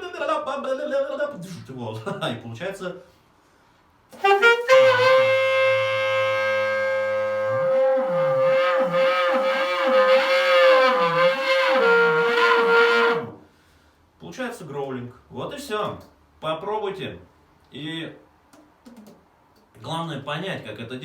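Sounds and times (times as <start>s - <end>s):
saxophone growl: 4.2s - 13.3s
voice sung through saxophone: 4.2s - 13.3s.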